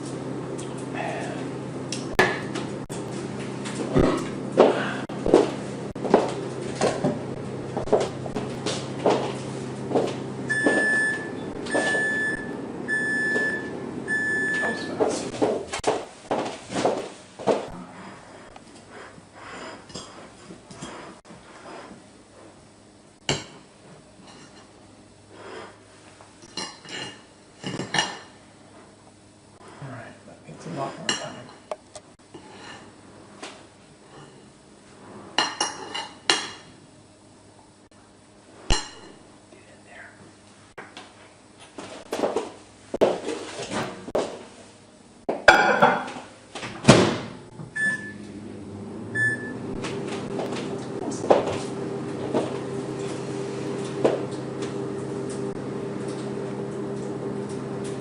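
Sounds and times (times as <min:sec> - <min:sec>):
appliance humming: 0:00.0 - 0:58.0
tableware knocking: 0:45.4 - 0:46.2
tableware clinking: 0:45.5 - 0:46.2
short electronic beeps: 0:49.2 - 0:49.5.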